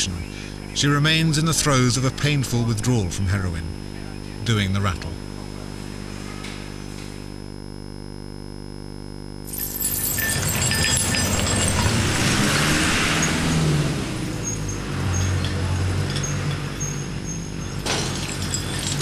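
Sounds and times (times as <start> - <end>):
road noise: 9.5 - 19.0
vehicle engine running: 9.5 - 19.0.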